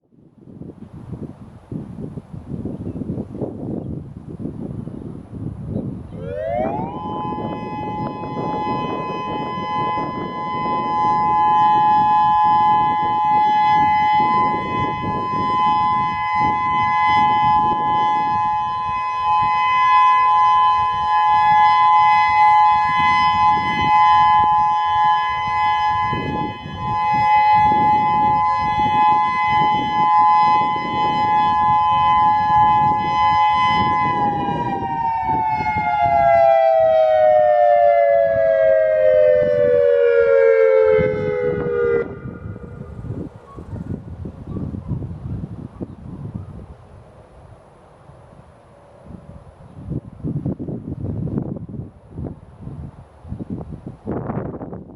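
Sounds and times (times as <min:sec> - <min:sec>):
two-tone warning siren: 0:06.0 - 0:54.9.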